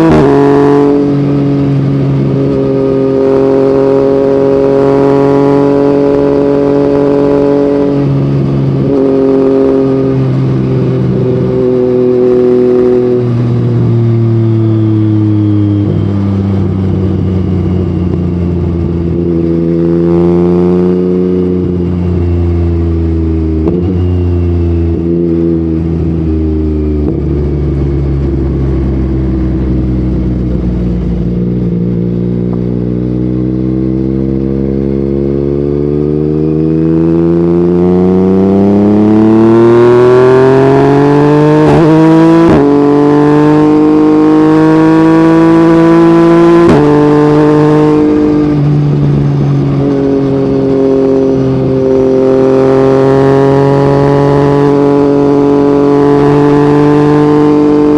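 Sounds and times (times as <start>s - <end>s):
motorcycle engine revving: 0.0s - 57.9s.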